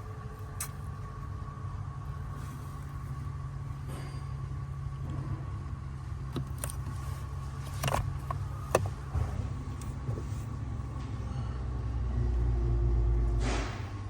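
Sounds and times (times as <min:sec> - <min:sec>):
car low hum: 0:00.0 - 0:14.0.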